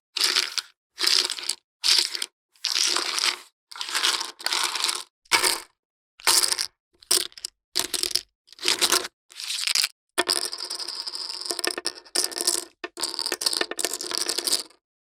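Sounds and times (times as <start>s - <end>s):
poker chips clattering: 6.4s - 14.8s.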